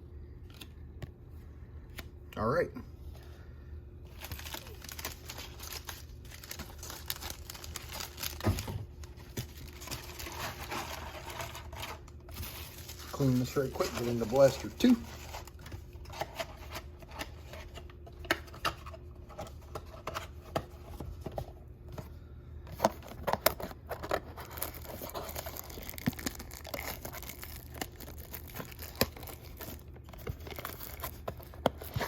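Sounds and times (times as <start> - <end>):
packaging crinkling and tearing: 4.1 - 20.0, 22.8 - 32.0.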